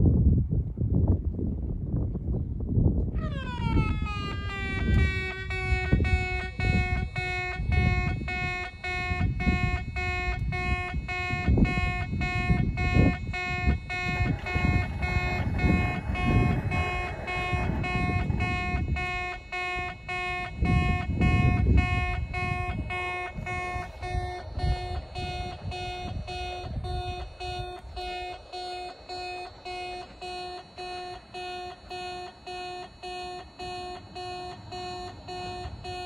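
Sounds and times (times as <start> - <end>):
wind rumbling on microphone: 0.0 - 28.6
level-crossing buzzing warning tone: 3.2 - 36.0.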